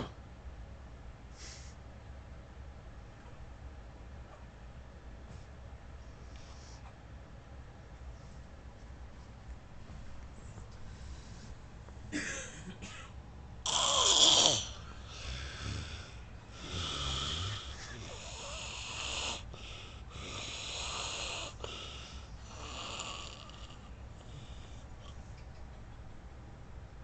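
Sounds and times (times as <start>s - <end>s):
man snoring: 13.7s - 24.6s.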